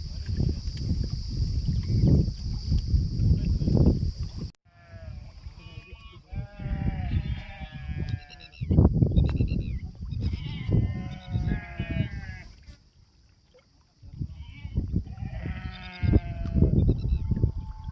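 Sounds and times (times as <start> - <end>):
animals bleating: 4.7 - 8.6, 10.2 - 12.5, 14.2 - 16.8.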